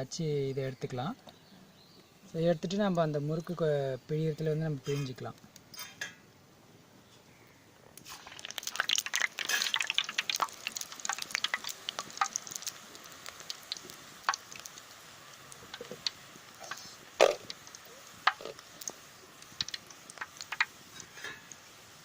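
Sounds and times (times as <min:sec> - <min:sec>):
dough crackling in hot oil: 0:07.8 - 0:22.0.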